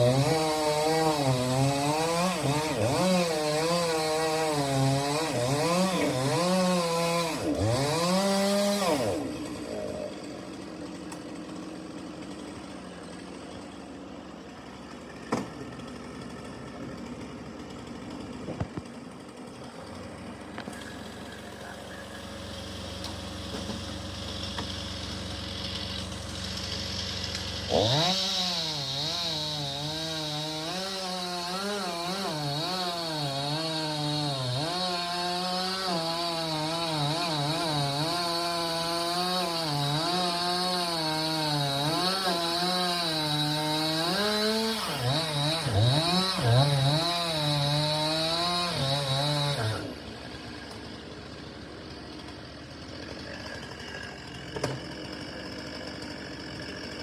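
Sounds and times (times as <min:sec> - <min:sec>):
chainsaw cutting through tree: 0:00.0 - 0:57.0.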